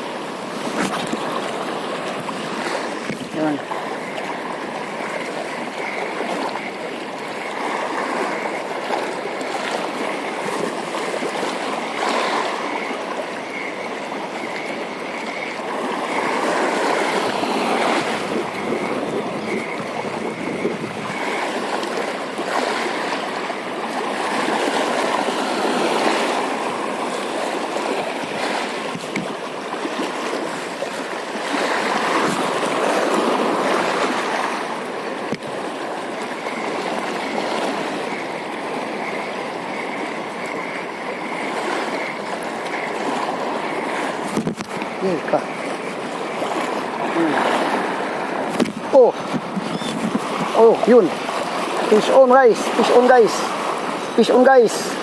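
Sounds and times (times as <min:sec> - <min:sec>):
sea water lapping: 0:00.0 - 0:55.0.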